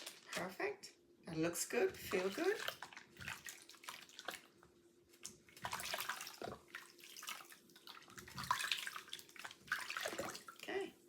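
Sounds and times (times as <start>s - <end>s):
water splashing and running: 2.0s - 10.8s.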